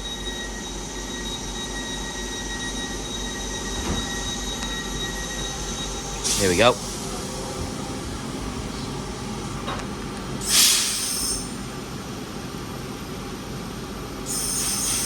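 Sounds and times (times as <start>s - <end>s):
train equipment humming: 0.0s - 15.0s
air hiss burst: 10.4s - 11.5s, 14.3s - 15.0s.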